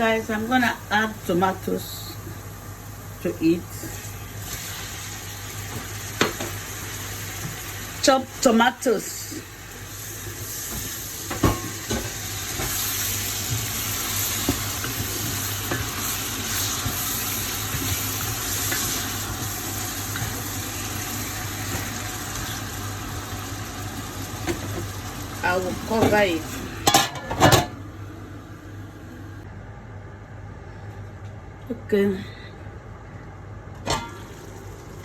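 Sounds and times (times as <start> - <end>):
tomatoes sizzling in a pot: 0.0 - 28.1, 33.9 - 35.0.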